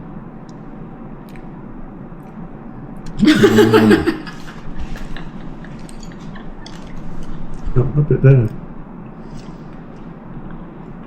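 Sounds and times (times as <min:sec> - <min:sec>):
mouth clicking while eating: 0:01.2 - 0:01.5.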